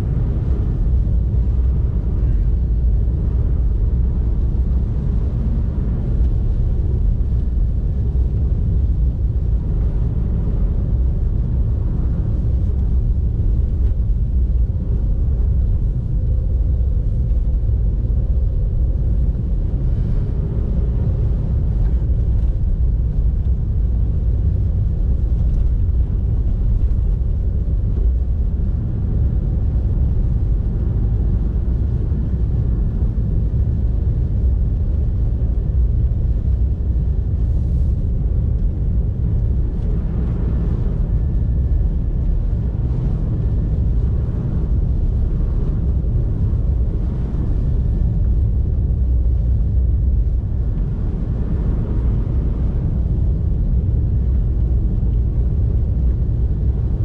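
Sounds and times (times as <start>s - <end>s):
car road and engine rumble: 0.0s - 57.0s.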